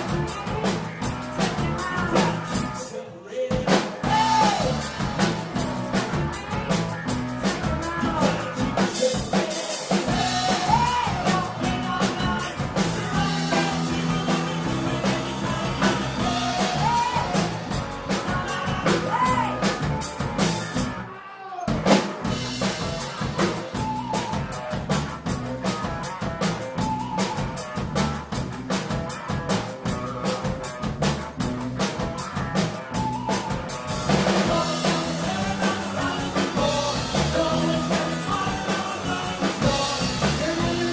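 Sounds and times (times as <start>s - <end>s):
person singing: 0.0s - 19.8s, 32.9s - 40.9s
drum kit: 0.0s - 40.9s
rock band playing live: 0.0s - 40.9s.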